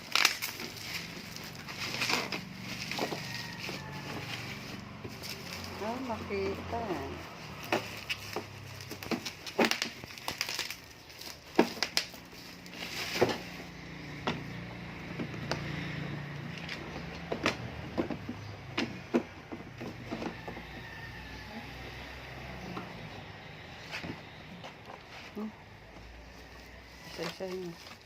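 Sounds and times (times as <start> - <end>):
packaging crinkling: 0.0 - 5.8, 6.6 - 13.8
packaging clicks and knocks: 7.4 - 13.5, 16.5 - 21.0.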